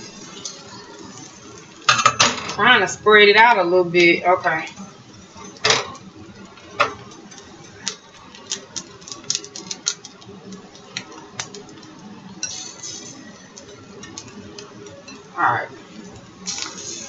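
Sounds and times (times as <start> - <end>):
batter sizzling in oil: 0.0 - 17.0
utensil tapping frying pan: 4.0 - 17.0.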